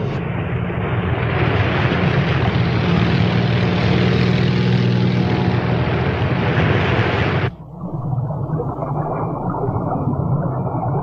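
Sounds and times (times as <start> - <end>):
loud rushing noise: 0.0 - 7.6
engine drone: 0.0 - 11.0.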